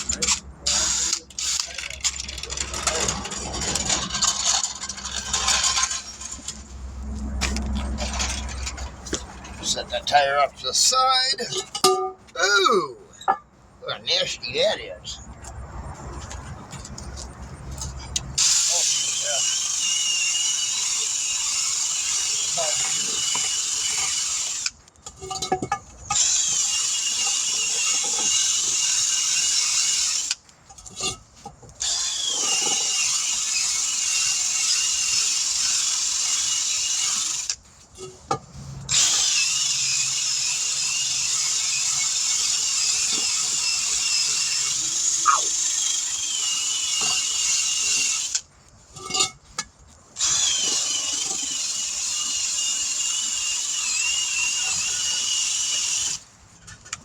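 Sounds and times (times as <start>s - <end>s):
power tool whining: 0.0s - 6.7s, 18.4s - 25.5s, 26.1s - 30.4s, 31.8s - 37.6s, 38.9s - 48.5s, 50.2s - 56.2s.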